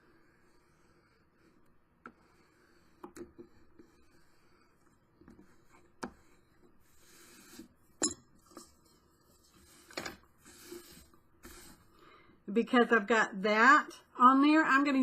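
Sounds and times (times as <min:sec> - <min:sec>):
bone folder rubbing along ruler: 0:00.0 - 0:07.8, 0:09.3 - 0:11.9.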